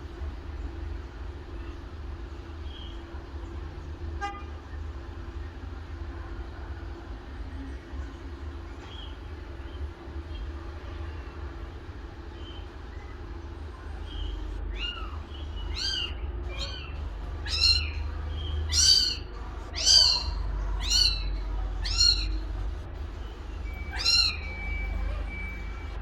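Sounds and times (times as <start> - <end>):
kitten meowing: 17.5 - 18.0, 18.7 - 22.4, 23.6 - 25.6.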